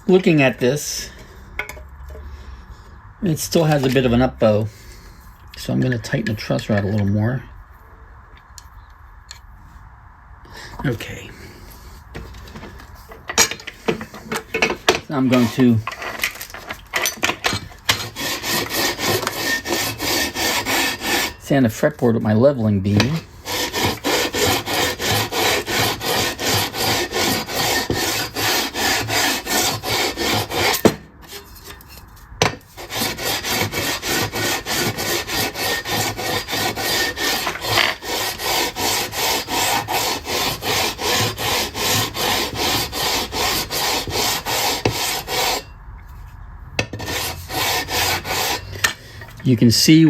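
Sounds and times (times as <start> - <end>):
sandpaper rubbing on fretboard: 17.9 - 21.4, 23.1 - 31.4, 32.7 - 45.6, 47.1 - 48.7.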